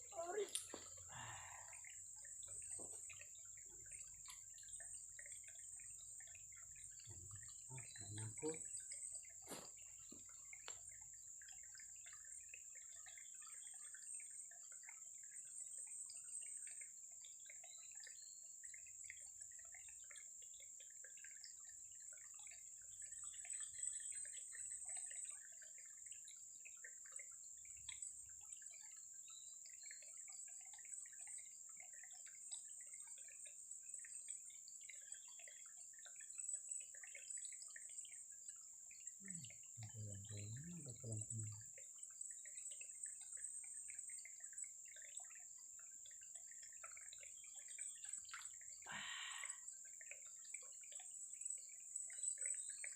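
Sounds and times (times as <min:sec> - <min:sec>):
water dripping and trickling: 0:00.0 - 0:52.9.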